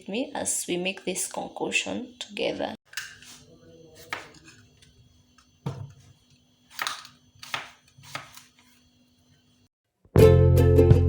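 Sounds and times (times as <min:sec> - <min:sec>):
kitchen items scuffing: 0:05.6 - 0:06.3.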